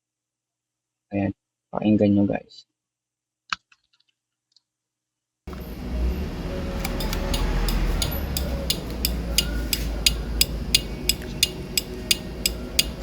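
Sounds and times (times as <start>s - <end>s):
turn signal relay clicking: 6.7s - 13.0s.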